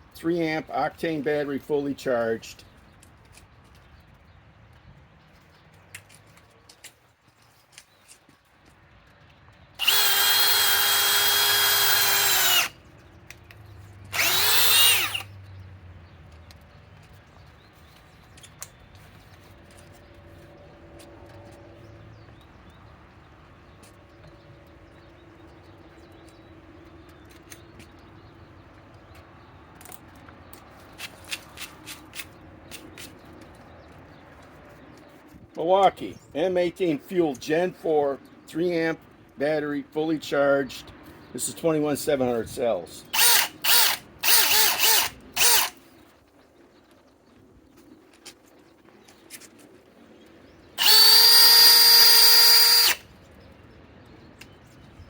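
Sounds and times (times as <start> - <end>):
sharp clicks: 9.2 - 15.5, 43.1 - 45.8, 50.8 - 53.0
cordless drill running: 9.8 - 12.7, 14.1 - 15.3, 43.1 - 45.8, 50.8 - 53.0.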